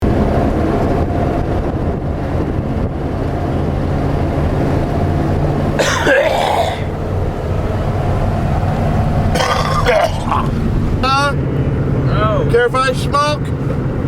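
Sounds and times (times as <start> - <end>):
vehicle engine rumble: 0.0 - 14.0
harsh cough: 5.8 - 6.9, 9.4 - 10.5.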